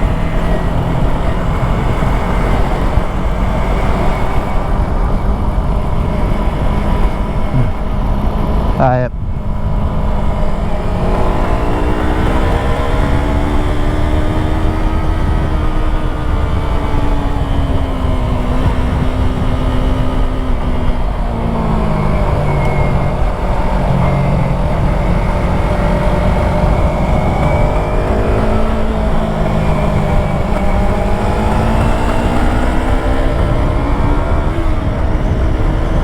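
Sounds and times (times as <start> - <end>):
motorcycle engine revving: 0.0 - 36.0.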